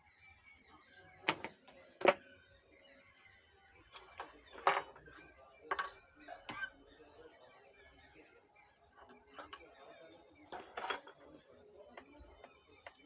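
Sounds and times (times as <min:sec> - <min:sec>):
tools clicking and knocking on workbench: 0:01.2 - 0:02.2, 0:03.9 - 0:05.1.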